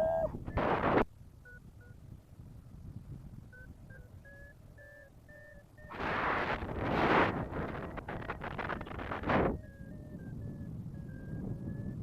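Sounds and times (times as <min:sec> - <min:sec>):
wind rush on microphone: 0:00.0 - 0:12.0
variometer beeping: 0:01.4 - 0:02.0, 0:03.4 - 0:06.2, 0:07.7 - 0:12.0.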